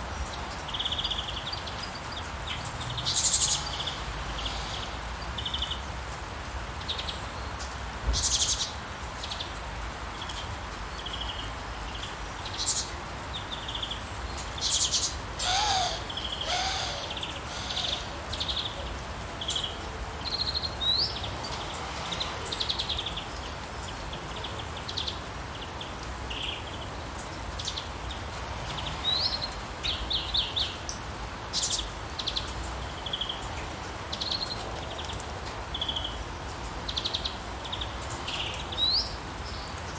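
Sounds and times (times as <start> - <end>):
steady rain: 0.0 - 39.9
small birds chirping: 11.0 - 21.4.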